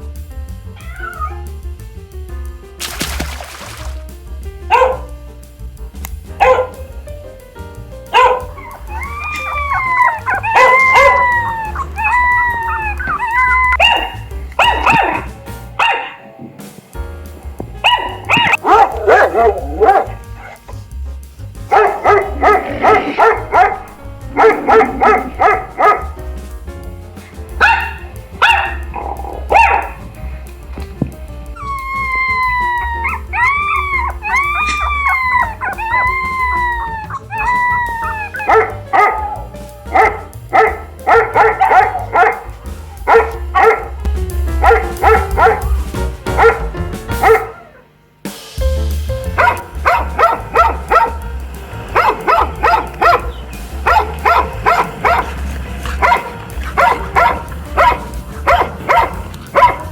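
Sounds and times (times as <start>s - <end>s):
background music: 0.0s - 59.9s
dogs barking and yipping: 0.7s - 1.7s, 4.7s - 5.2s, 6.1s - 7.1s, 8.0s - 16.5s, 17.5s - 26.6s, 27.2s - 47.9s, 49.1s - 59.9s
dogs howling: 0.8s - 1.6s, 8.2s - 16.4s, 17.8s - 20.7s, 21.7s - 26.2s, 27.6s - 30.9s, 31.5s - 45.8s, 46.4s - 47.9s, 49.3s - 59.9s.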